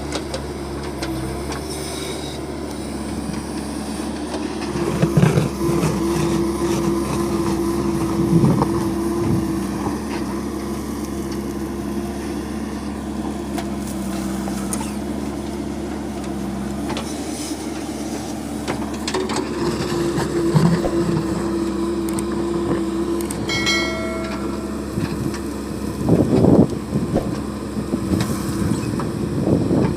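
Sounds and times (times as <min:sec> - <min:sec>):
diesel engine under load: 0:00.0 - 0:29.9
brief high-pitched tone: 0:23.5 - 0:25.3.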